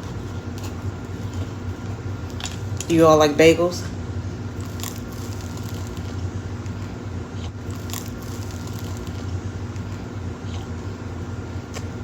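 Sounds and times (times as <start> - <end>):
steady low hum: 0.0 - 12.0
person chewing bagel: 4.5 - 12.0.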